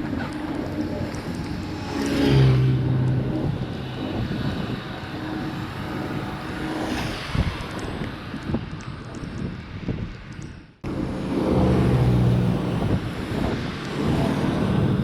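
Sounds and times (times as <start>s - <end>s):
vehicle engine: 0.0s - 8.4s, 10.8s - 15.0s
outdoor noise rush: 0.0s - 15.0s.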